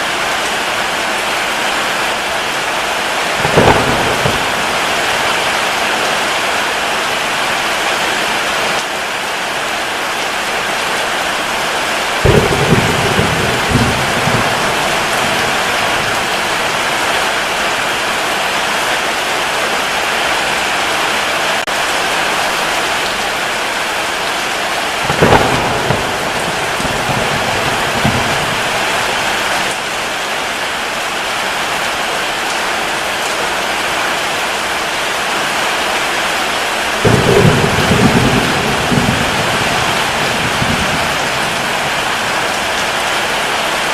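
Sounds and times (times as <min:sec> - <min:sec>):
heavy rain: 0:00.0 - 0:43.9
low thunder rolls: 0:03.4 - 0:06.0, 0:12.2 - 0:17.6, 0:25.0 - 0:29.7, 0:37.0 - 0:43.2.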